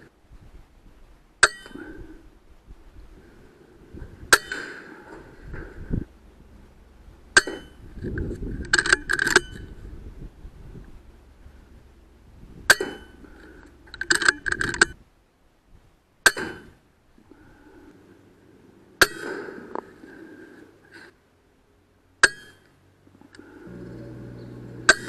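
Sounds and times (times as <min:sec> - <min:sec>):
metallic clicks of rifle action: 0:08.2 - 0:09.7, 0:13.4 - 0:15.0.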